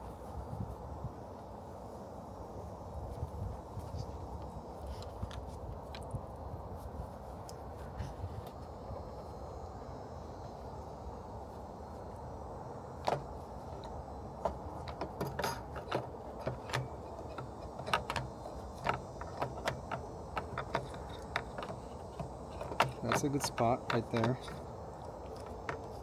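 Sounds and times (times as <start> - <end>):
steady low hum: 0.0 - 26.0
plastic parts clicking and rattling: 13.0 - 26.0.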